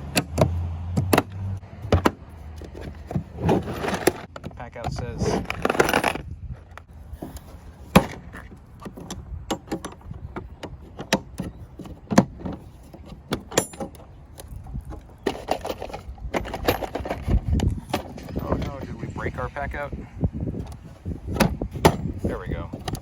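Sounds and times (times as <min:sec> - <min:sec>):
plastic organizer knocking and rattling: 0:21.3 - 0:23.0.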